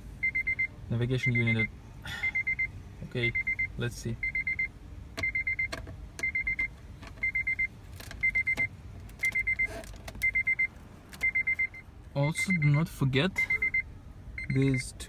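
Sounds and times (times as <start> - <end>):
car warning chime beeping: 0.2 - 15.0.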